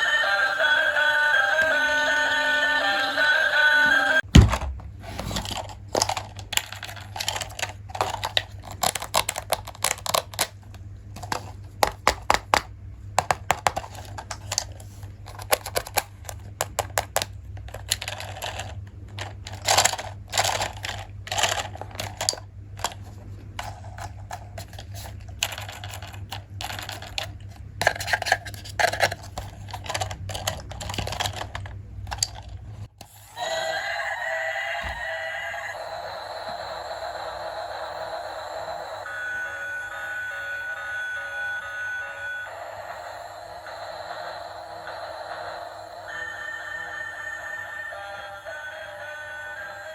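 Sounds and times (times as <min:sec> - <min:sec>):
steady low hum: 0:00.0 - 0:49.9
plastic toy parts clicking: 0:05.2 - 0:32.6.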